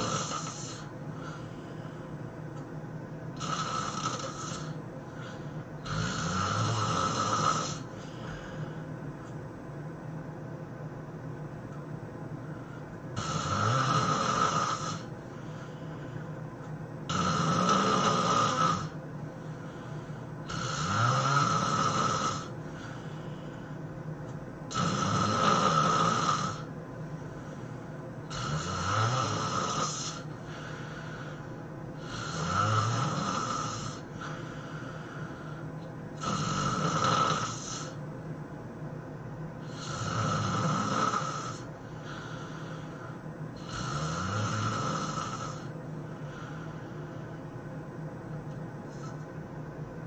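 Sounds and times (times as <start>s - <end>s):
person snoring: 0.0s - 1.9s, 3.4s - 8.8s, 13.2s - 16.3s, 17.1s - 23.4s, 24.7s - 26.7s, 27.4s - 38.0s, 39.6s - 47.4s
quiet breathing: 0.0s - 10.0s, 12.2s - 38.4s, 39.6s - 49.4s.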